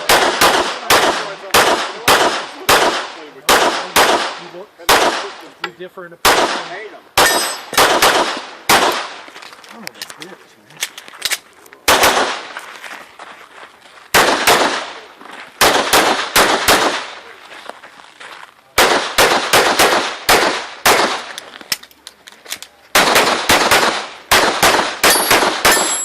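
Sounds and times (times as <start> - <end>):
pistol shots with echo: 0.0 - 5.5, 6.2 - 9.2, 11.9 - 12.6, 14.1 - 17.3, 18.8 - 21.4, 22.9 - 26.0.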